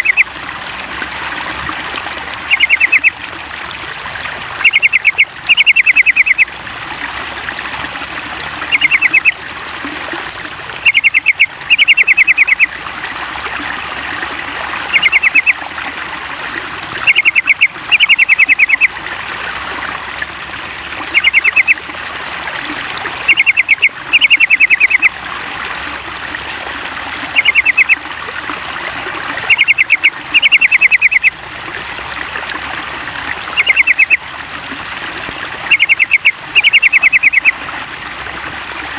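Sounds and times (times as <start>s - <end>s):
bird chattering calls: 0.0s - 0.2s, 2.5s - 3.1s, 4.6s - 6.4s, 8.7s - 9.3s, 10.8s - 12.7s, 14.9s - 15.6s, 17.0s - 18.9s, 21.1s - 21.8s, 23.3s - 25.1s, 27.4s - 28.0s, 29.5s - 31.3s, 33.6s - 34.2s, 35.7s - 37.5s
trickle of running water: 0.0s - 38.9s.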